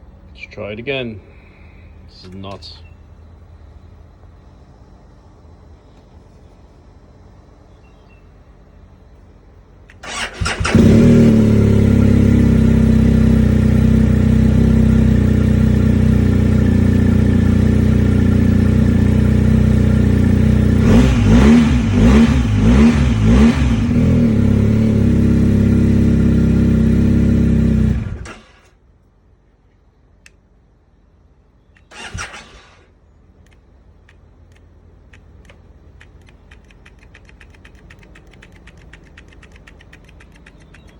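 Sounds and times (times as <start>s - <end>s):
engine throttle blips: 9.9s - 28.5s, 33.4s - 40.9s
motorcycle engine starting and running: 9.9s - 28.8s, 31.8s - 32.9s, 33.5s - 40.9s.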